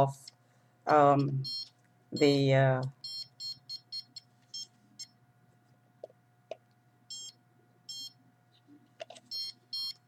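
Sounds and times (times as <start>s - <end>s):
detector beeping: 1.2s - 2.4s, 3.0s - 5.2s, 9.3s - 10.0s.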